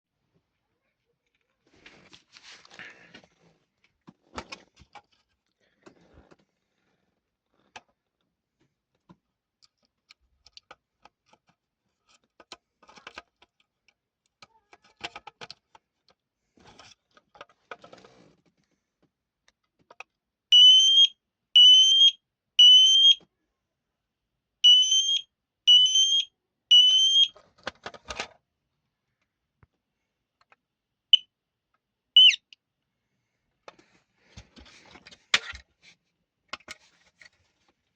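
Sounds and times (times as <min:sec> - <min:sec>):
smoke alarm shrill beeps: 0:20.5 - 0:23.2, 0:24.6 - 0:27.3, 0:32.2 - 0:32.4.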